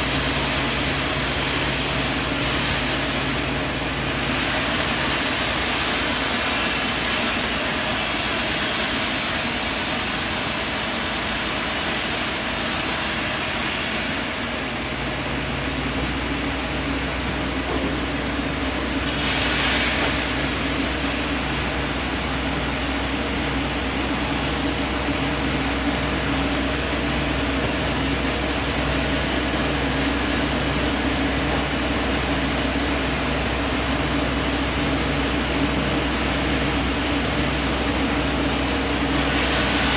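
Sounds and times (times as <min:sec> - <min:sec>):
high hiss: 0:00.0 - 0:15.1, 0:19.0 - 0:21.7, 0:38.9 - 0:39.9
sawmill machinery running: 0:00.0 - 0:39.9.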